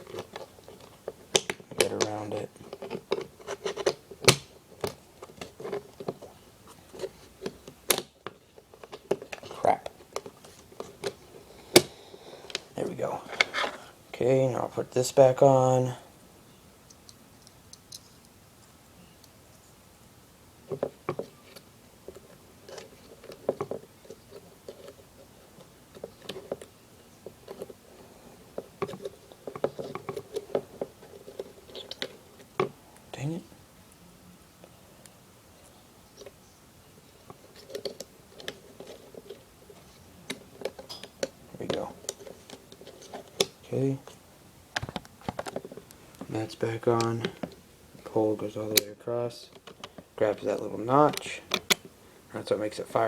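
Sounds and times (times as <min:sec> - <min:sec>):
pistol parts clicking and scraping: 0:16.8 - 0:18.4, 0:20.8 - 0:32.8, 0:49.6 - 0:52.0.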